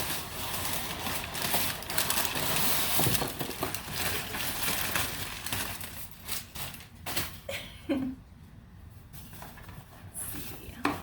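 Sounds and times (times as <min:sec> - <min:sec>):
paper packing crinkling: 0:00.0 - 0:07.4.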